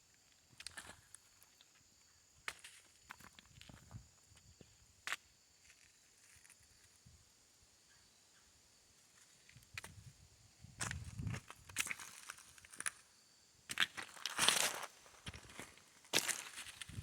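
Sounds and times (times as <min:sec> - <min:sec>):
footsteps on gravelly beach: 0:13.8 - 0:17.0.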